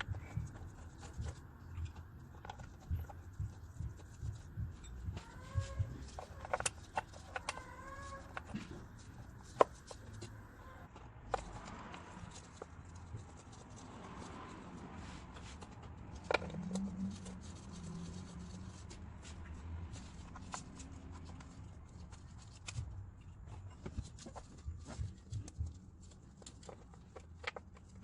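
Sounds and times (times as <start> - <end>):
hand tools clicking and clinking: 0.0 - 11.5.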